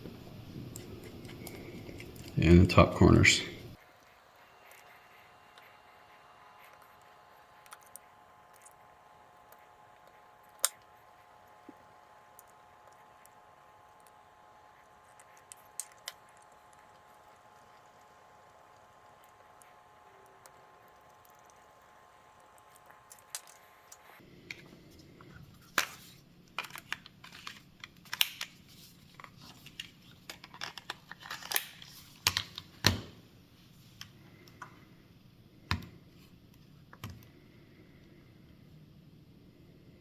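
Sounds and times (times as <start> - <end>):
plastic parts and tools clicking: 15.0 - 24.1, 25.6 - 33.1.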